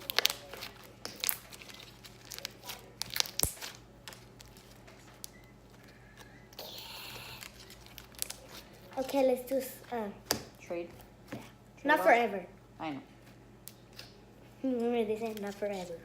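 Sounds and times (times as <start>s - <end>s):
crinkling and rustling: 0.0s - 6.4s, 7.4s - 10.0s, 15.2s - 16.0s.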